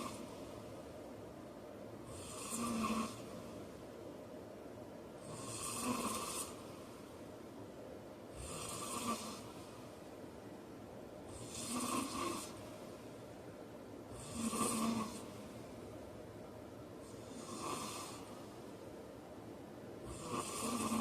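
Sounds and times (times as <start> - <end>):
man snoring: 2.1 - 3.3, 5.2 - 6.6, 8.4 - 9.5, 11.3 - 12.6, 14.1 - 15.4, 17.1 - 18.4, 20.0 - 21.0.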